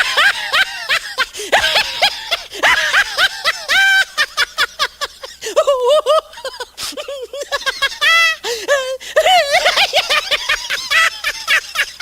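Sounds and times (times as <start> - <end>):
high-pitched cartoon laugh: 0.0 - 8.4, 9.2 - 12.0.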